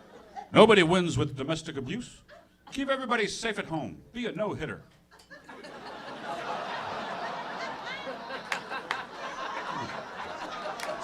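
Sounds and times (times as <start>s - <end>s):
audience laughing: 5.3s - 11.0s.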